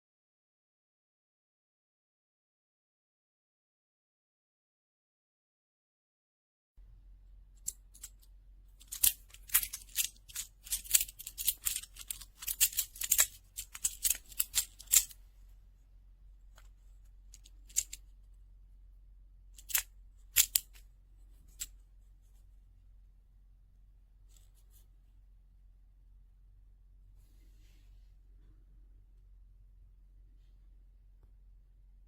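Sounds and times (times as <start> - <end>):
magnetic blocks clicking: 7.6 - 15.2, 17.3 - 18.0, 19.6 - 20.8.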